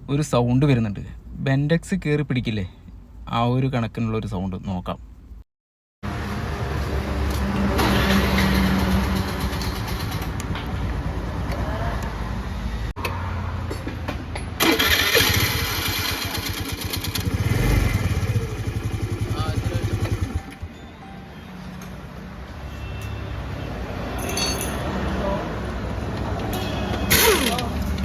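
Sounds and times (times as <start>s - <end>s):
scooter engine starting and running: 6.1s - 12.7s, 14.5s - 20.7s, 27.0s - 28.0s
starter gear grinding noise: 7.8s - 11.6s, 14.6s - 20.7s, 27.1s - 28.0s.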